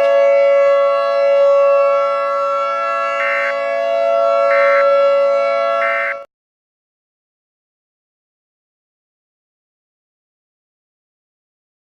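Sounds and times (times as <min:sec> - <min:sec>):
warning siren chord: 0:00.0 - 0:06.3.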